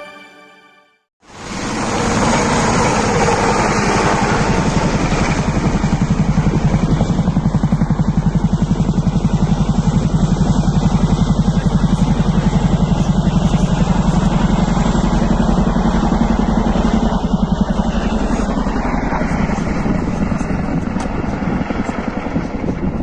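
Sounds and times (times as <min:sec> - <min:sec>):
helicopter rotor pulsing: 0:01.2 - 0:23.0.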